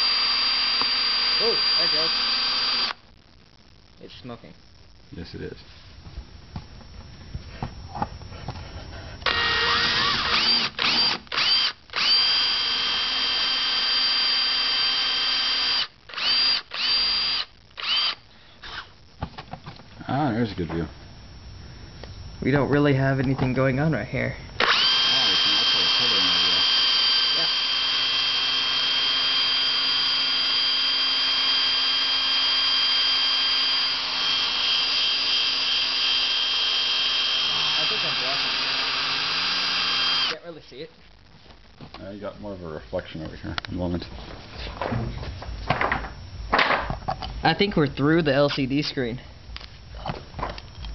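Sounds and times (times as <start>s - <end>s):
power drill motor whining: 0.0s - 3.0s, 9.2s - 19.0s, 24.6s - 40.4s.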